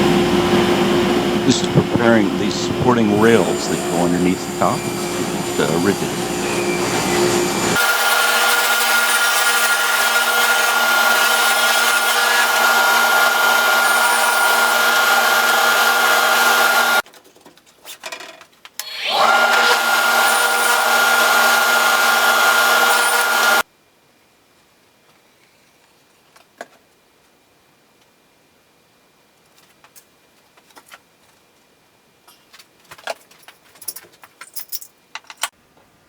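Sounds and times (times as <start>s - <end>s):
power tool cutting wood: 0.0s - 17.0s, 18.8s - 23.6s.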